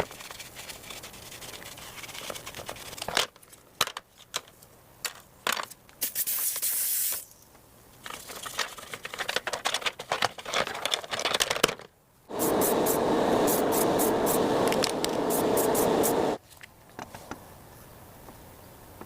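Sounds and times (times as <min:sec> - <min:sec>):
spray hiss: 0:06.0 - 0:07.3, 0:12.3 - 0:16.4.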